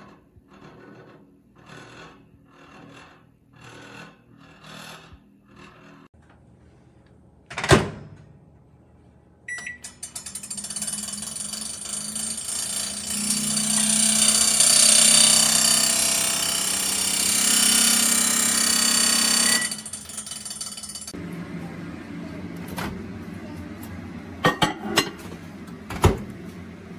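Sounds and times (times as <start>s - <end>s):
microwave oven buzzing hum: 0.0s - 26.9s
door shutting: 7.5s - 8.3s
microwave beep: 9.4s - 10.2s.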